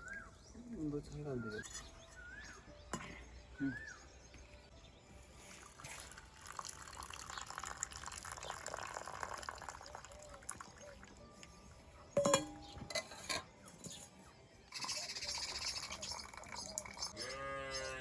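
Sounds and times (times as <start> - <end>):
liquid splashing into container: 5.8 - 10.8.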